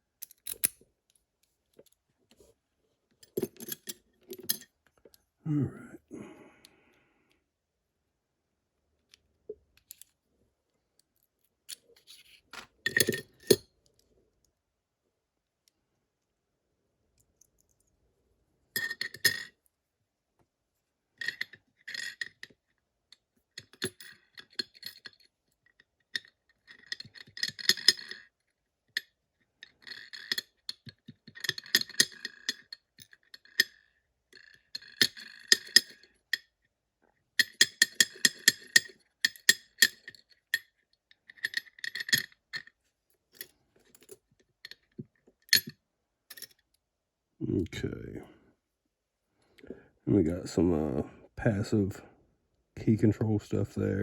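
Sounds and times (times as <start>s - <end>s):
small metal parts clinking: 0.2s - 1.2s, 3.2s - 4.8s, 11.2s - 13.7s, 26.1s - 28.3s, 29.7s - 36.5s, 37.4s - 42.8s.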